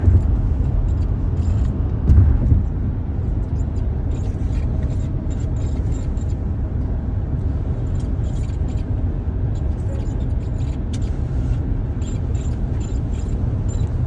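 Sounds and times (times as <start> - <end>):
high-pitched steering wheel squeaks: 0.0 - 1.8, 3.3 - 6.4, 7.9 - 8.9, 9.5 - 14.0
road and engine rumble: 0.0 - 14.0.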